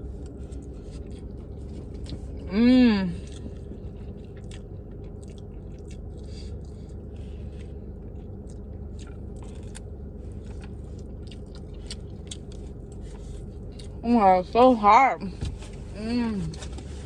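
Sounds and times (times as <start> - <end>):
person chewing food: 0.0 - 2.5, 3.1 - 14.0
steady low hum: 0.0 - 17.0.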